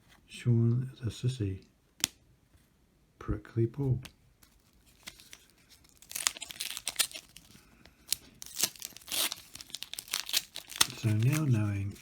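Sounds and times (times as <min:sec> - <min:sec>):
paper wrapper tearing and crinkling: 0:04.5 - 0:12.0.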